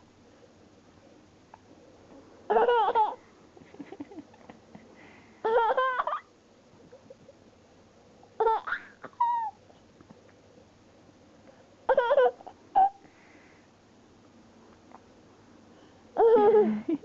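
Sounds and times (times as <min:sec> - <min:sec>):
baby giggling: 0:02.5 - 0:04.5, 0:05.4 - 0:06.2, 0:11.9 - 0:13.0, 0:16.2 - 0:17.0.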